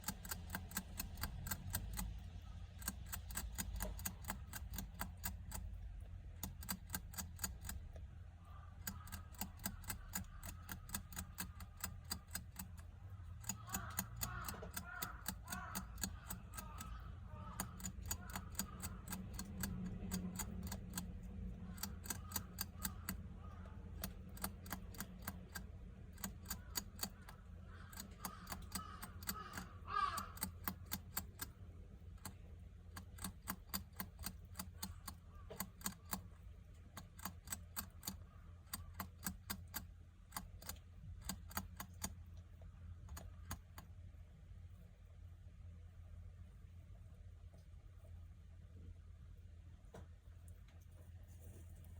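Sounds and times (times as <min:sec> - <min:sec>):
hamster licking metal sipper tube: 0:00.0 - 0:08.0, 0:08.7 - 0:42.2
distant crows cawing: 0:08.4 - 0:10.8, 0:13.2 - 0:19.1, 0:21.6 - 0:24.0, 0:26.5 - 0:30.9.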